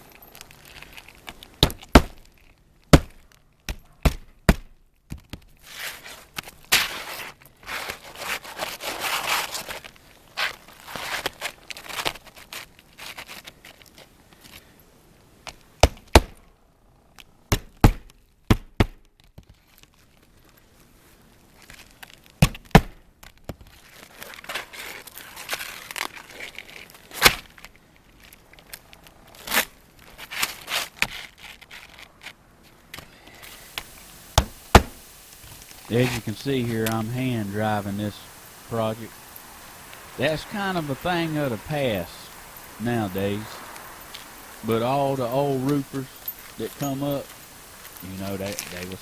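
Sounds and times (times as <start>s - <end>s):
roofing material rustling and tearing: 0.0s - 14.7s, 19.0s - 49.0s
hammer driving nails: 34.4s - 35.0s.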